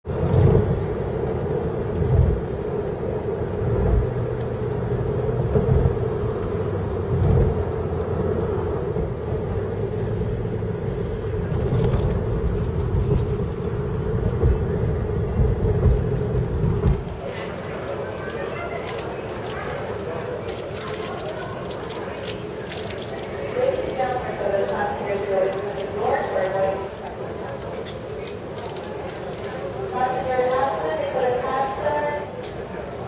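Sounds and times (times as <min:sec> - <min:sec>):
uneven low rumble: 0:00.1 - 0:18.7
steady mechanical hum: 0:00.1 - 0:33.0.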